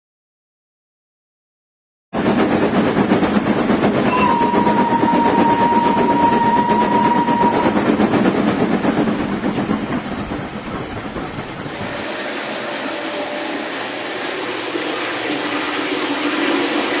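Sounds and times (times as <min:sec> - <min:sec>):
train clattering at speed: 0:02.2 - 0:17.0
train whistle: 0:04.1 - 0:07.9, 0:11.9 - 0:14.4.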